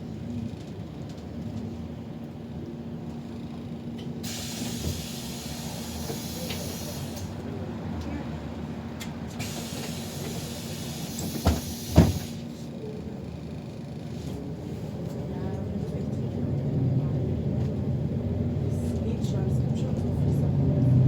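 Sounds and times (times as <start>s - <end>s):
bus interior rumble: 0.0s - 21.0s
bus air brake hiss: 4.2s - 7.4s, 9.4s - 12.5s.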